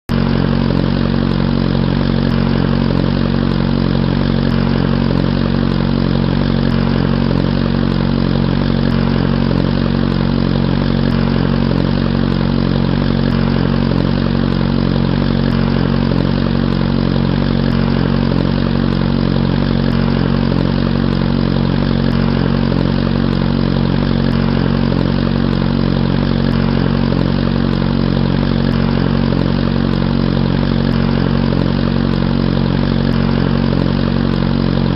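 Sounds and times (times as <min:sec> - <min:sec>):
motorcycle engine idling: 0:00.0 - 0:34.9.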